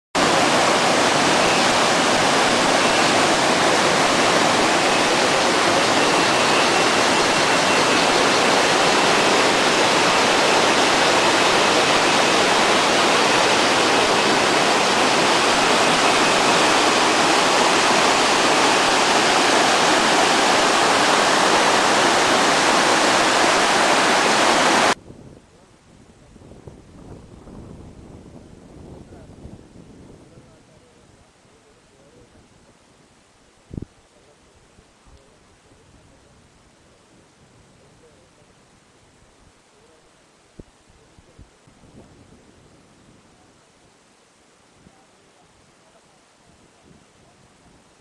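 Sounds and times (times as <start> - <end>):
stream water rushing: 0.2 - 25.0.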